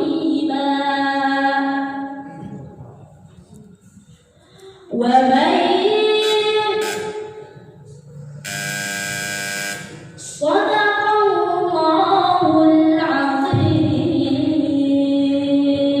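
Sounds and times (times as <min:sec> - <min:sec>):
woman chanting recitation: 0:05.0 - 0:07.5, 0:10.3 - 0:16.0
buzzing electronic tone: 0:06.8 - 0:07.4, 0:08.4 - 0:10.2.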